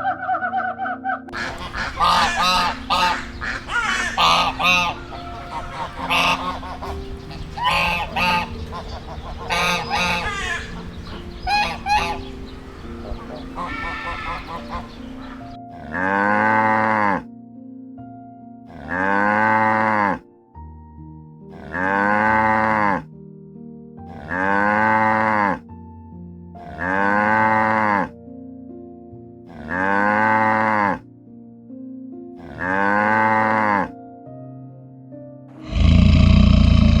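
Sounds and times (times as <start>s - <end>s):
faint music: 0.0s - 23.2s
cow mooing: 15.7s - 17.3s, 18.7s - 20.3s, 21.5s - 23.1s, 24.1s - 25.6s, 26.6s - 28.1s, 29.5s - 31.0s, 32.4s - 33.9s, 35.6s - 37.0s.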